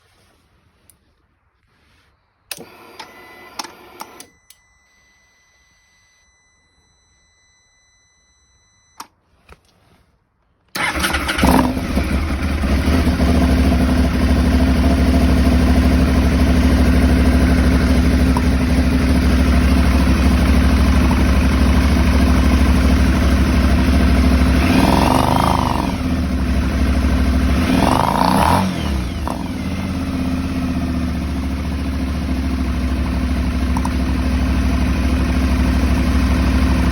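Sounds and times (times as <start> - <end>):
ignition clicks: 10.7 - 12.4, 18.3 - 18.7, 33.7 - 34.1
motorcycle engine idling roughly: 10.8 - 36.9.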